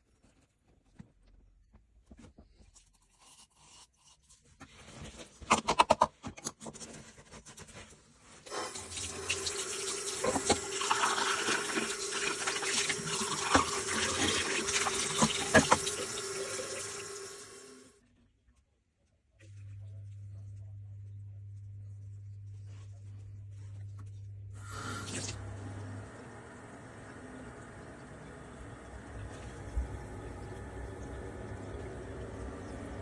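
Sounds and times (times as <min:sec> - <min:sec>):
water running from a tap: 0:08.5 - 0:17.9, 0:24.6 - 0:25.8, 0:26.9 - 0:33.0.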